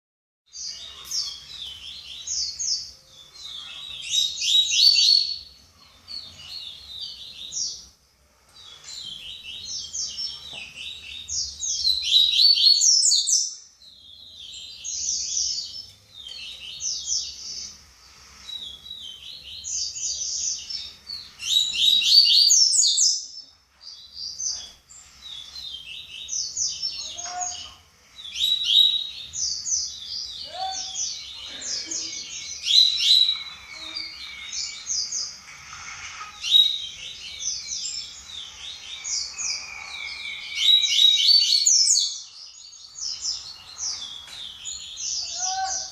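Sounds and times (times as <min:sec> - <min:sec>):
bird singing chattering phrases: 0:18.5 - 0:35.4, 0:36.4 - 0:45.9.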